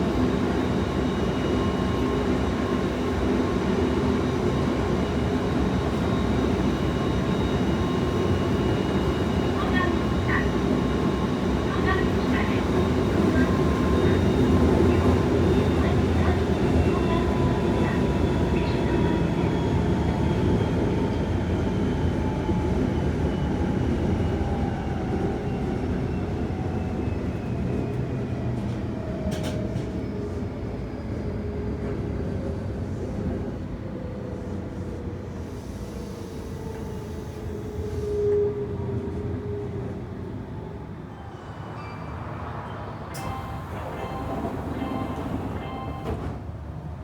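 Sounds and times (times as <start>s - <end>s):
train wheels rumbling on rails: 0.0s - 40.4s, 41.7s - 47.0s
brief loud tone: 43.2s - 46.4s.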